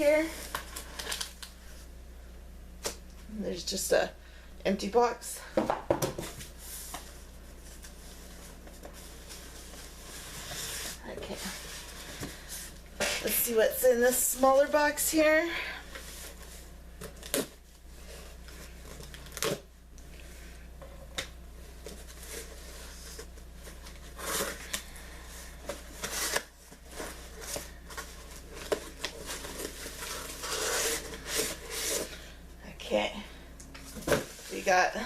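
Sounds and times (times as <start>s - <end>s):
cardboard and paper rustling: 0.0s - 1.9s, 6.1s - 13.5s, 21.6s - 32.3s, 33.8s - 35.0s.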